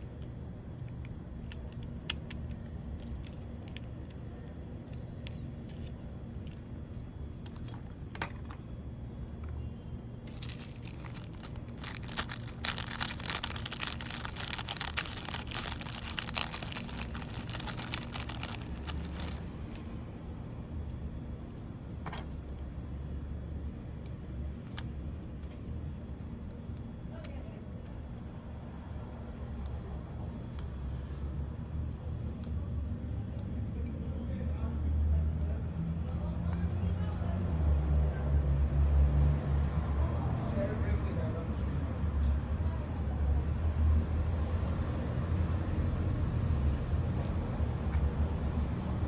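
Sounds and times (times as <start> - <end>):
steady low hum: 0.0 - 37.9
clicking and rattling: 5.7 - 8.6, 10.3 - 19.9
rustling: 10.3 - 19.9.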